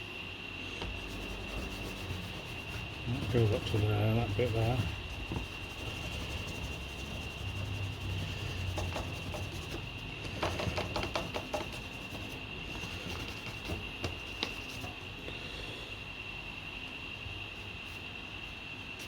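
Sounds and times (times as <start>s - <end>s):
steady high-pitched whine: 0.0s - 19.0s
paper rustling: 0.8s - 15.0s
pencil scratching on paper: 0.8s - 15.0s.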